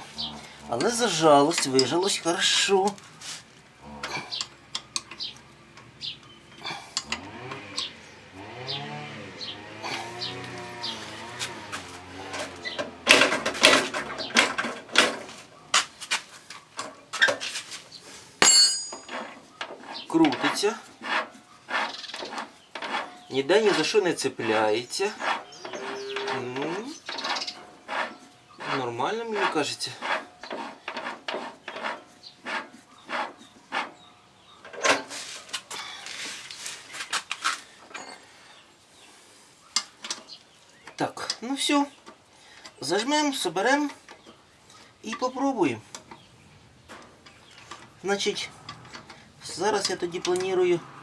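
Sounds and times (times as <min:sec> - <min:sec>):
metal parts clicking and scraping: 0:09.9 - 0:17.8, 0:18.4 - 0:20.6
metal knocks and clanks: 0:11.2 - 0:16.0.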